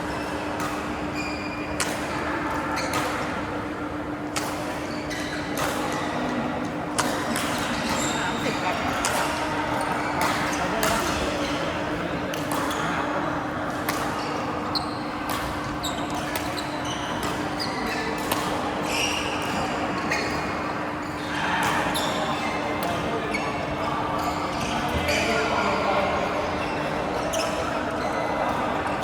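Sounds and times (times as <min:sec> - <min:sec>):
shoes squeaking on court floor: 0:00.0 - 0:13.2, 0:13.8 - 0:29.0
racket hitting shuttlecock: 0:01.8 - 0:03.3, 0:04.3 - 0:04.9, 0:05.6 - 0:06.0, 0:09.0 - 0:11.3, 0:13.8 - 0:14.2, 0:15.2 - 0:16.6, 0:18.2 - 0:19.6.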